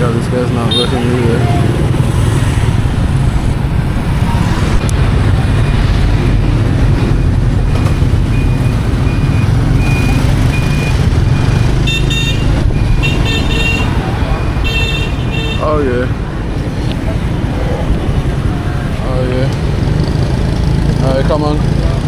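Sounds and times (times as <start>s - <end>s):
vehicle horns tooting: 0.0s - 2.6s, 11.6s - 16.1s
traffic rumble: 0.0s - 22.0s.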